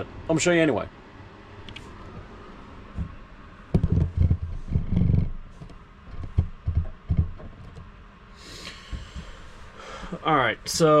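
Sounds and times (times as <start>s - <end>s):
dull thumps and knocks: 2.9s - 7.9s, 8.9s - 9.4s.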